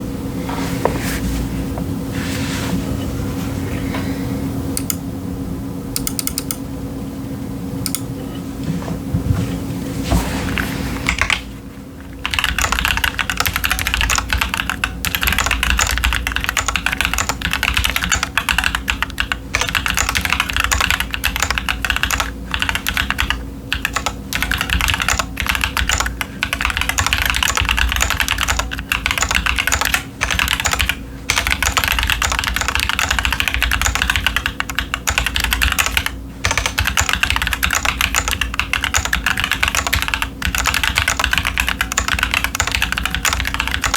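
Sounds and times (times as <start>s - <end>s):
fast mechanical keyboard typing: 6.0s - 6.6s, 11.1s - 11.4s, 12.2s - 43.9s.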